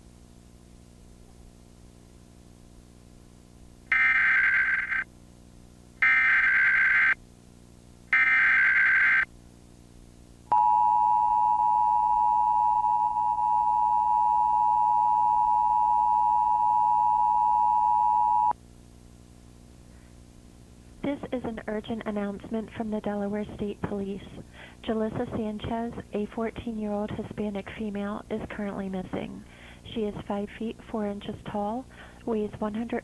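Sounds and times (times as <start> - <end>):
two-tone attention signal: 10.5 - 18.5.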